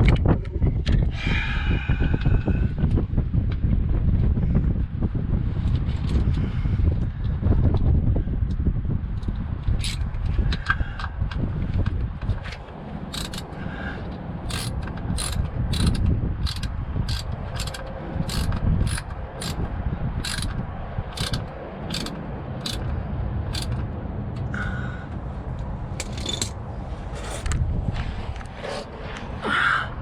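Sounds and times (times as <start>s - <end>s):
steady low rumble: 0.0s - 30.0s
hand ratchet clicking: 13.1s - 13.5s, 14.5s - 22.9s, 23.5s - 23.8s.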